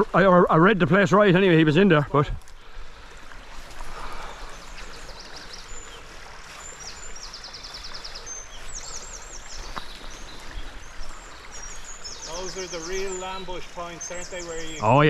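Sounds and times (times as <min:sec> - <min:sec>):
river water rushing: 0:00.0 - 0:15.0
songbirds singing: 0:03.7 - 0:15.0.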